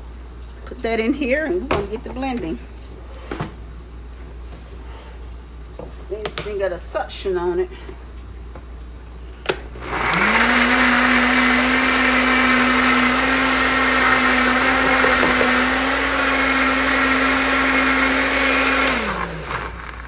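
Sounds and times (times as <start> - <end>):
blender motor running: 9.8 - 20.0.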